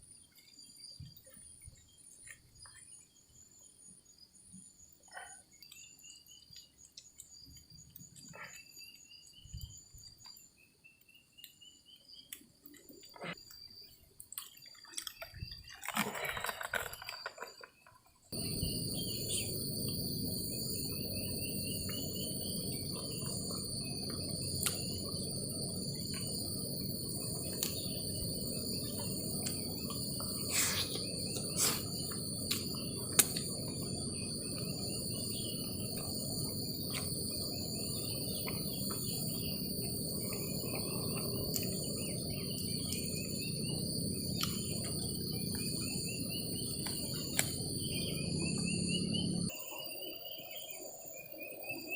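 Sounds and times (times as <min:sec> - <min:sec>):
crickets trilling: 0:00.0 - 0:51.9
rustle: 0:15.8 - 0:49.4.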